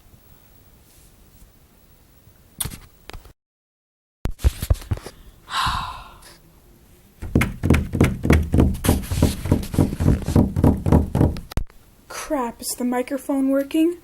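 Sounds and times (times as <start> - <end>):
fast dull thumps: 7.2 - 11.6
sharp knocks: 7.2 - 11.6.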